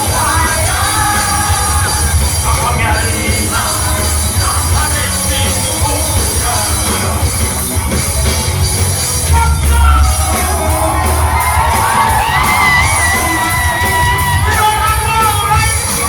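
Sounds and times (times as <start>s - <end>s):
rock band playing: 0.0s - 16.0s.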